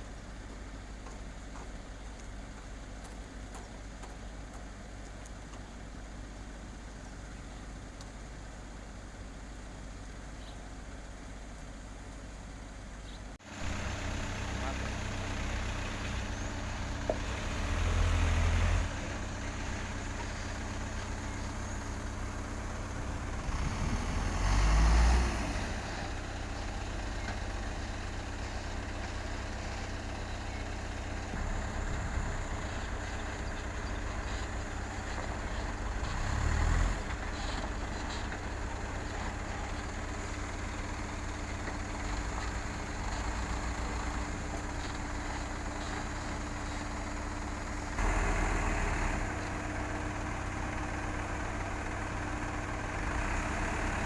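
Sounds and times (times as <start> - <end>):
diesel machinery engine revving: 13.4 - 54.0.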